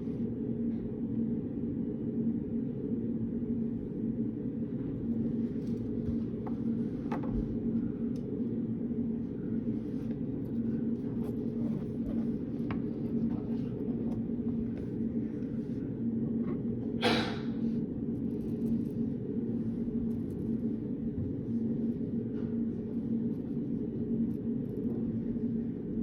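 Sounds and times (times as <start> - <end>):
low hum with faint tone: 0.0 - 26.0.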